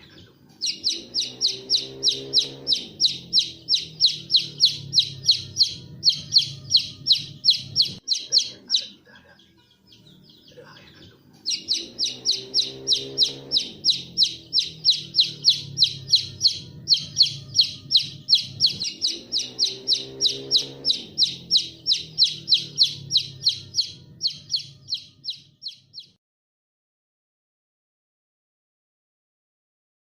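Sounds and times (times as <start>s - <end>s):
bird chirping rapidly: 0.0s - 26.2s
low rising and falling tones: 0.6s - 8.1s, 11.5s - 26.2s.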